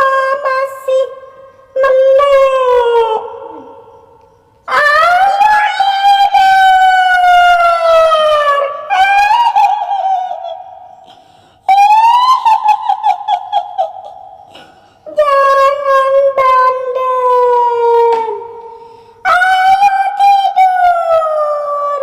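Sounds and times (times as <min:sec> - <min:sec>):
woman's voice wailing: 0:00.0 - 0:01.2, 0:01.8 - 0:03.8, 0:04.7 - 0:10.8, 0:11.7 - 0:18.6, 0:19.2 - 0:22.0
trilling laugh: 0:08.9 - 0:14.8.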